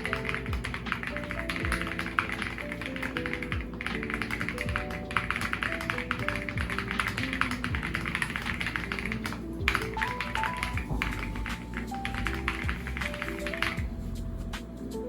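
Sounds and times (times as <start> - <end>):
mechanical keyboard typing: 0.0 - 13.9
background music: 0.0 - 15.0.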